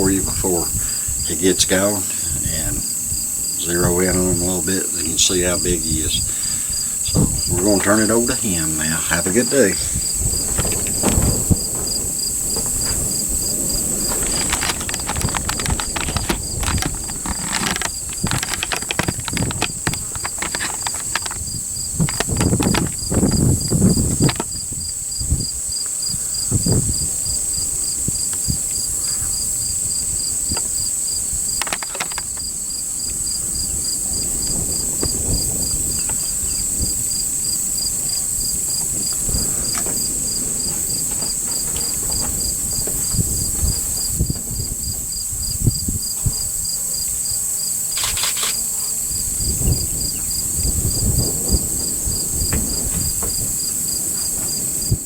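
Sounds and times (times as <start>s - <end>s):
crickets and insects chirping: 0.0s - 55.0s
knocks and rustles: 10.4s - 24.6s, 31.5s - 32.5s, 51.8s - 54.6s.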